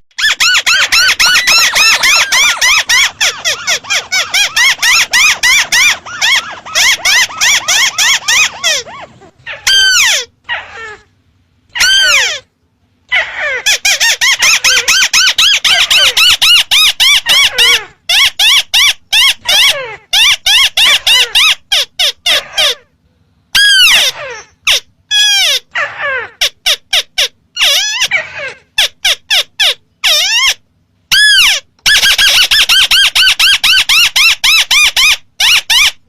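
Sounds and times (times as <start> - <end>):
bird squealing calls: 0.2 - 11.0.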